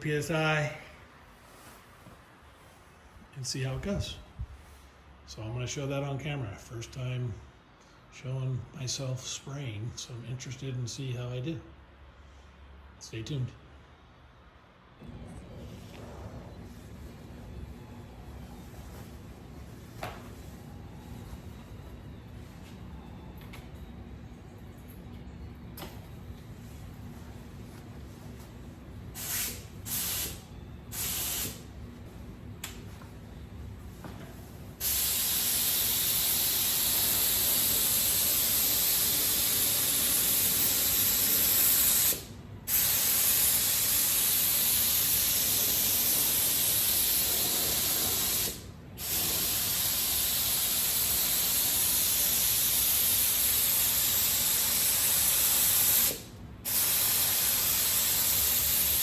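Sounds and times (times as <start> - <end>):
spray gun hissing: 29.2 - 31.7, 34.8 - 59.0.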